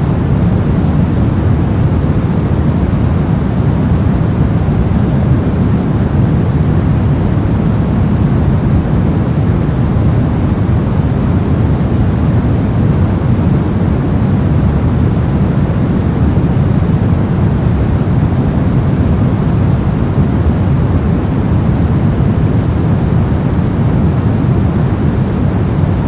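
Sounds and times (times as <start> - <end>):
brown noise: 0.0 - 26.0.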